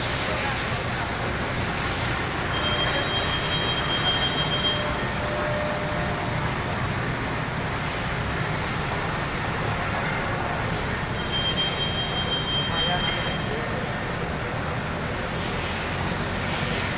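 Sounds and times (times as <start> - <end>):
thin high whine: 0.0 - 7.9, 10.8 - 13.8
machinery rumble and hiss: 0.0 - 16.9.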